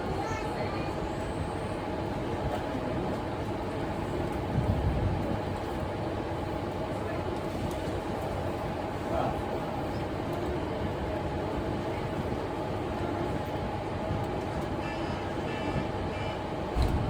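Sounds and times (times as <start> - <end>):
train wheels rumbling on track: 0.0 - 17.0
heavy low thud: 16.8 - 17.0.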